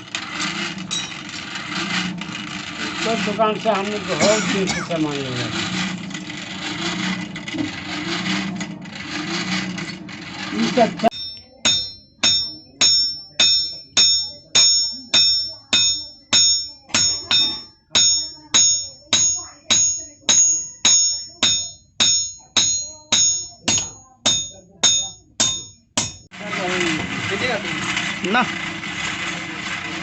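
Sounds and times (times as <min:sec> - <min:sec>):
hammer striking steel on anvil: 0:00.9 - 0:01.1, 0:11.1 - 0:26.3.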